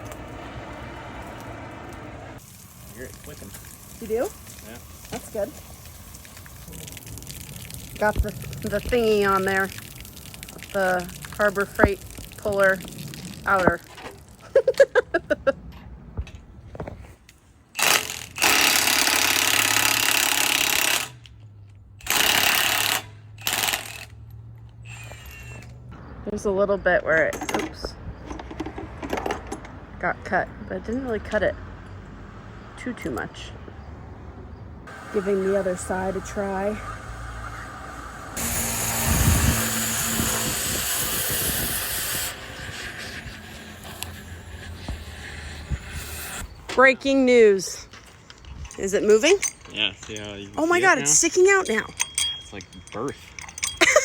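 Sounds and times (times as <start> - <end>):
cutting torch hissing: 34.9 - 46.5.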